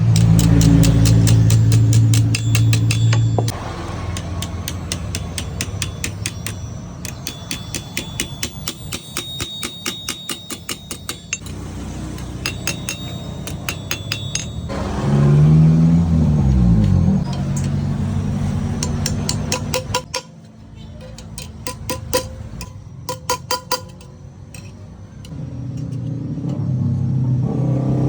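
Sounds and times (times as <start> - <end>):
engine revving: 0.0 - 5.8, 14.6 - 19.8, 25.3 - 28.0
hammer striking metal: 0.0 - 26.8
steady engine hum: 0.0 - 28.0.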